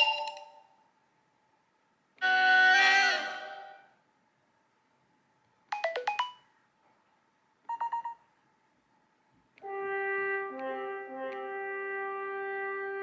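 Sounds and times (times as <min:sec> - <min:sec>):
phone text tones: 0:05.7 - 0:06.5, 0:07.7 - 0:08.2
brass-like chord: 0:09.6 - 0:13.0.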